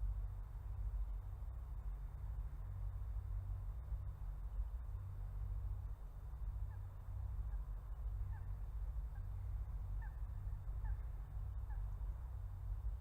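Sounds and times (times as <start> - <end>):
faint short bird calls: 6.6 - 12.0.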